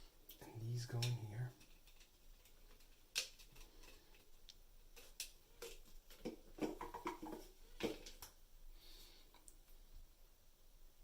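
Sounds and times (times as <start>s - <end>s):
small parts clicking and knocking: 0.2s - 8.4s.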